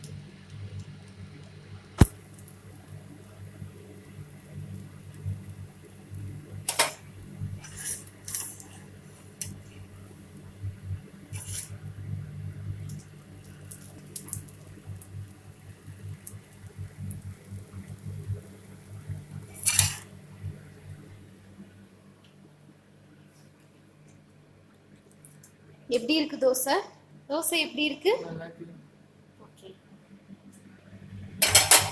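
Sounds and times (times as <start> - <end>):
steady low hum: 0.0 - 22.1
metal spatula scraping a pan: 7.6 - 8.9, 11.3 - 11.8, 19.5 - 20.1.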